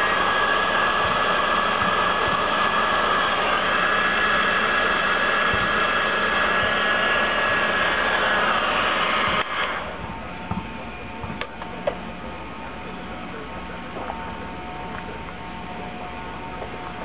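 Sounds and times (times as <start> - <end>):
heat gun blowing: 0.0 - 10.0
low hum: 0.0 - 17.0.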